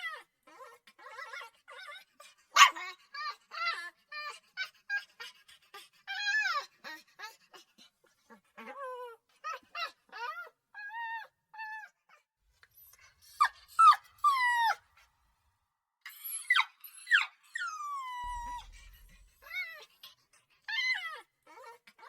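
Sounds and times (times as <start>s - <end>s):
puppy whimpering and yelping: 0.0s - 15.1s, 16.1s - 22.0s
puppy falling whine: 16.3s - 19.9s.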